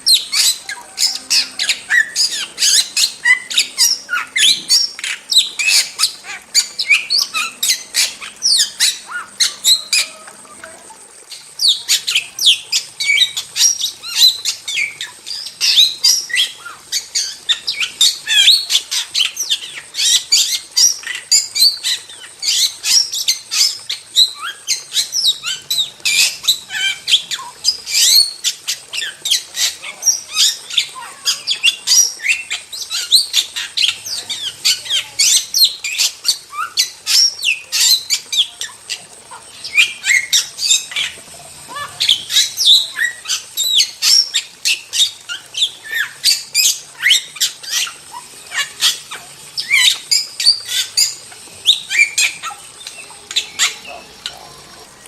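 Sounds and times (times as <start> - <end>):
starling singing: 0.0 - 55.0.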